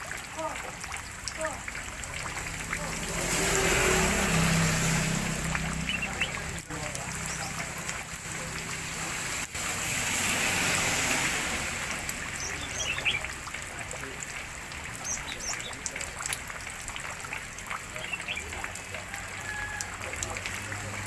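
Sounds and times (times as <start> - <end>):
water trickling and splashing: 0.0 - 21.0
high bird chirps: 5.8 - 6.5, 12.3 - 13.4, 15.0 - 15.8.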